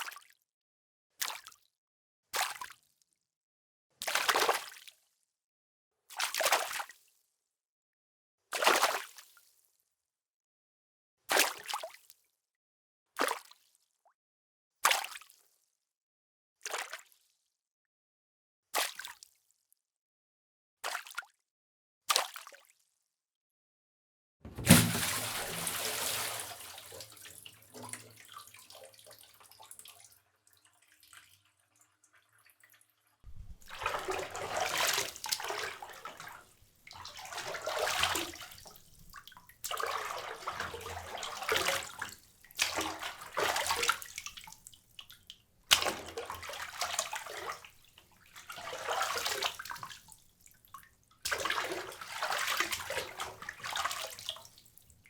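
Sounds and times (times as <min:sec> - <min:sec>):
water splashing: 0:24.5 - 0:28.6, 0:33.3 - 0:36.0
water dripping: 0:24.5 - 0:30.1.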